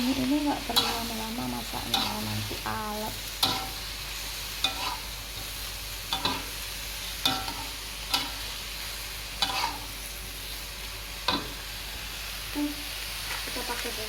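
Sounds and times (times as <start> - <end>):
food sizzling in a wok: 0.0 - 14.0.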